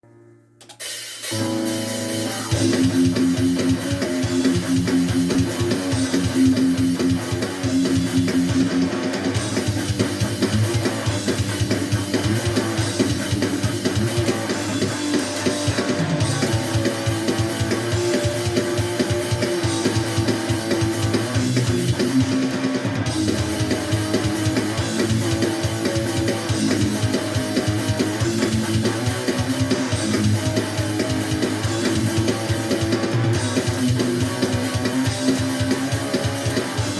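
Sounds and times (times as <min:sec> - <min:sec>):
strummed guitar: 0:00.0 - 0:36.9
drum kit: 0:00.6 - 0:36.9
bass guitar: 0:00.8 - 0:36.9.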